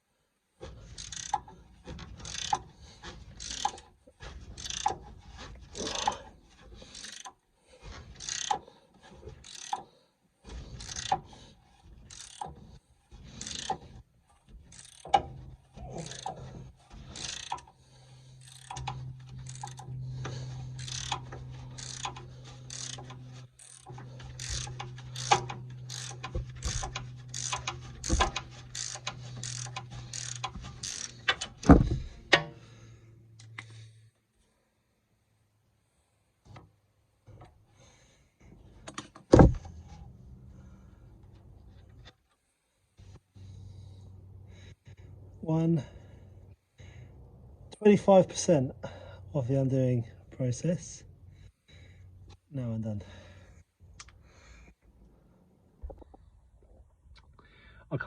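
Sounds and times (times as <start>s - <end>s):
hand ratchet clicking: 0.6s - 32.5s
steady low hum: 10.4s - 34.0s.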